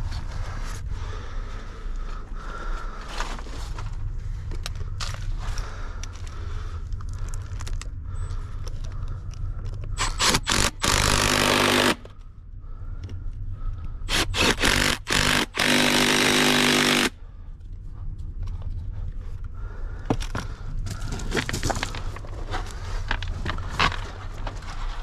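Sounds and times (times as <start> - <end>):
machine engine running: 10.0 - 12.0, 14.1 - 17.2.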